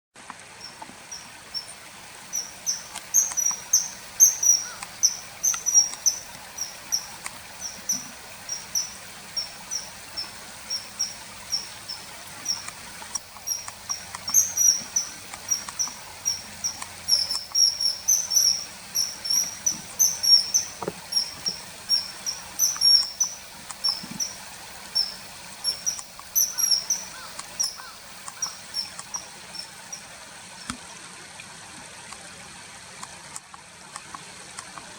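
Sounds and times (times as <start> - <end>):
faint background hiss: 0.2 - 34.9
small birds chirping: 0.6 - 30.2.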